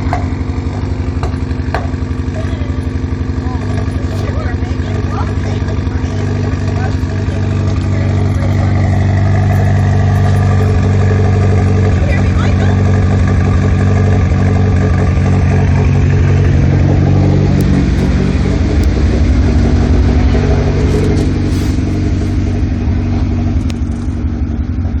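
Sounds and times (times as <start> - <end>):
car engine idling with misfire: 0.0 - 25.0.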